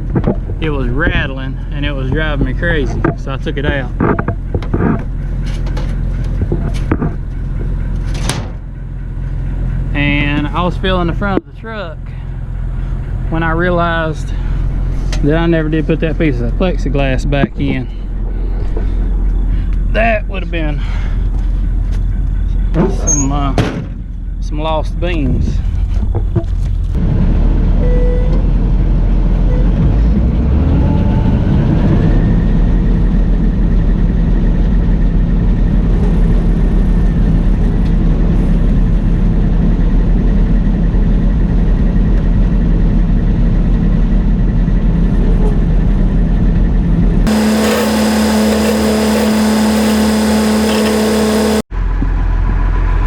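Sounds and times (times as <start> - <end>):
farm machinery engine running: 0.0 - 23.1, 31.8 - 53.0
high machine hum with hiss: 47.3 - 51.7.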